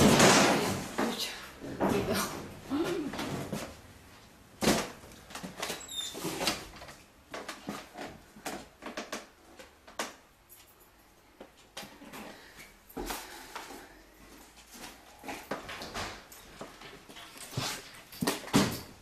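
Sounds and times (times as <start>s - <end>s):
household objects knocking and clattering: 0.0s - 2.3s.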